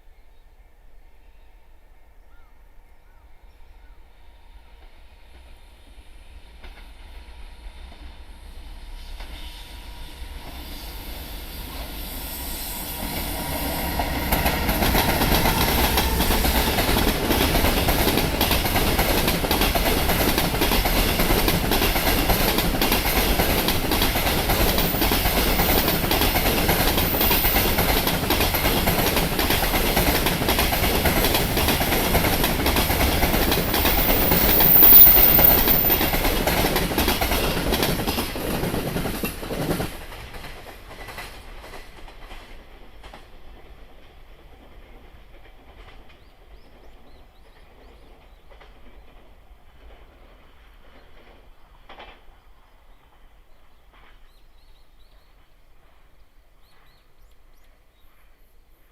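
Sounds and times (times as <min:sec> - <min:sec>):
train wheels clattering over rail joints: 0:13.9 - 0:52.3
high-pitched wheel squeal: 0:33.7 - 0:36.1.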